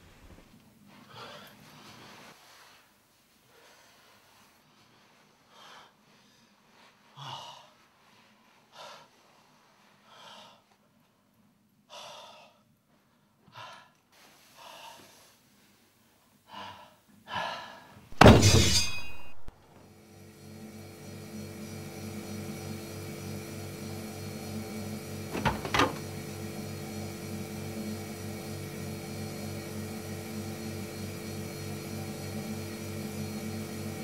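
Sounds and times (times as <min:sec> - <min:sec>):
loud crash with ringing: 0:18.2 - 0:19.5.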